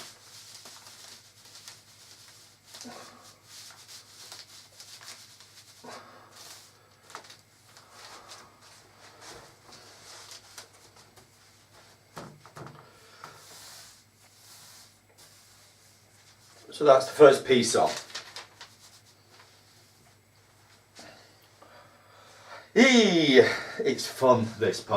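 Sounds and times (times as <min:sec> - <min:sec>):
paper rustling under cardboard: 0:00.0 - 0:12.6, 0:13.3 - 0:20.3.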